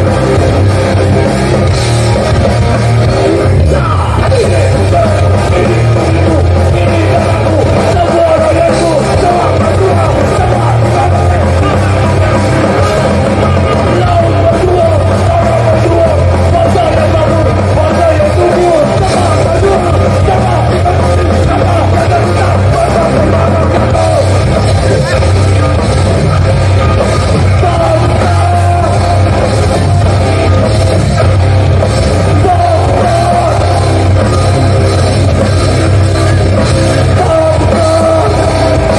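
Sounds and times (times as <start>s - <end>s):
live punk band playing: 0.0s - 38.9s
shouted vocals: 3.2s - 25.7s, 26.9s - 30.5s, 32.0s - 34.8s.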